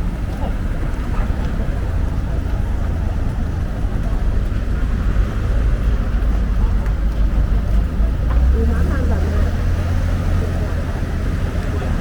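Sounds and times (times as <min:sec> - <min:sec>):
faint crowd voices: 0:00.0 - 0:12.0
road traffic rumble: 0:00.0 - 0:12.0.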